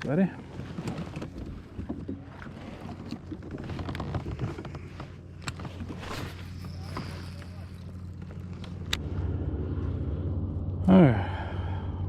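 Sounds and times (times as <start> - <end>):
steady low hum: 5.2 - 12.0.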